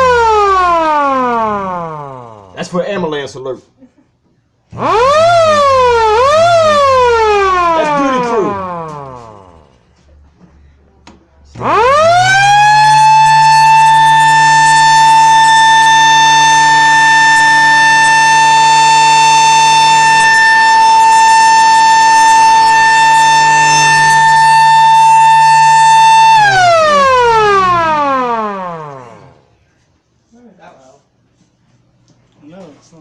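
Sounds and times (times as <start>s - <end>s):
mechanical siren wailing: 0.0s - 2.6s, 4.7s - 9.8s, 11.6s - 29.6s.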